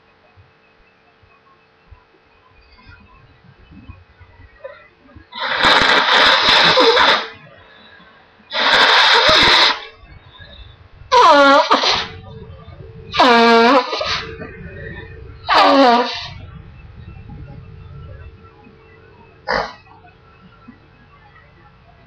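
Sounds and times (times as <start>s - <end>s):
faint steady hum: 0.0s - 22.0s
person blowing nose: 5.4s - 7.3s, 8.5s - 9.9s, 11.2s - 12.1s, 15.5s - 16.3s.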